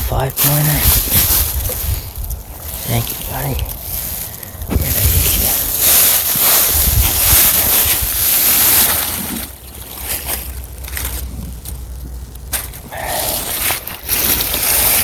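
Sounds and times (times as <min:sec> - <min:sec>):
wind blowing over microphone: 0:00.0 - 0:08.3.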